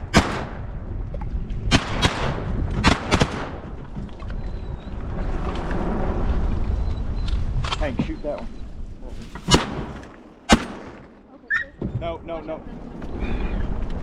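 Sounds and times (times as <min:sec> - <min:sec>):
shotgun shots: 0:00.0 - 0:00.7, 0:01.7 - 0:03.7, 0:09.3 - 0:11.4.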